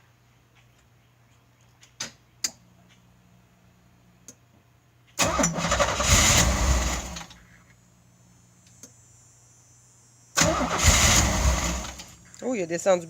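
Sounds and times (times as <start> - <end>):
starter cranking engine: 5.2 - 7.3, 10.4 - 12.2.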